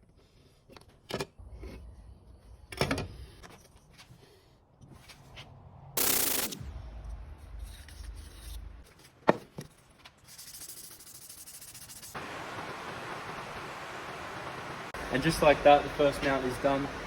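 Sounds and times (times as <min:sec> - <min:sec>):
loud burst of noise: 0:06.0 - 0:07.2
light rubbing and hissing: 0:10.2 - 0:12.2.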